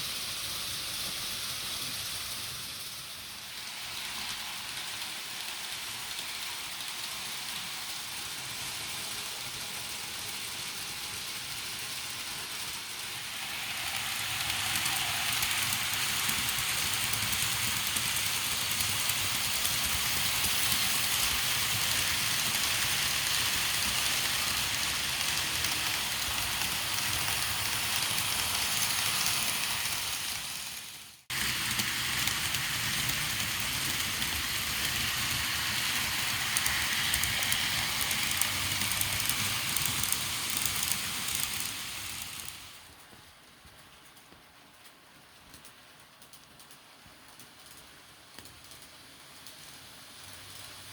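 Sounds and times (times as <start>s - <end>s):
train running on rails: 0.0s - 50.9s.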